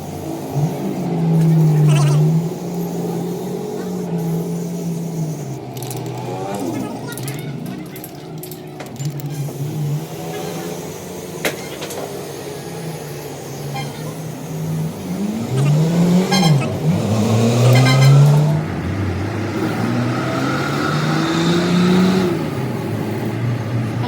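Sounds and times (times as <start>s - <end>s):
vehicle engines revving: 0.0s - 24.0s.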